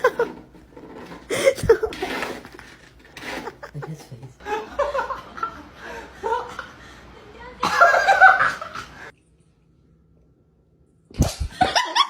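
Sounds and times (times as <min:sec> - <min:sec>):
person chuckling: 0:00.0 - 0:00.4, 0:01.3 - 0:02.1, 0:03.2 - 0:05.0.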